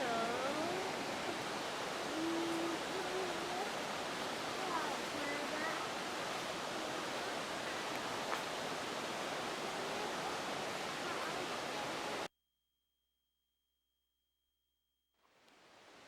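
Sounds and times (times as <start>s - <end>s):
rushing flowing water: 0.0s - 12.3s.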